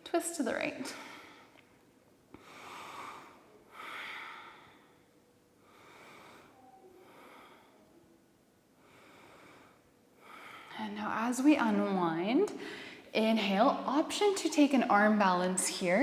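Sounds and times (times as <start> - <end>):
woman breathing softly: 2.4 - 8.1, 8.8 - 10.8, 12.6 - 13.1.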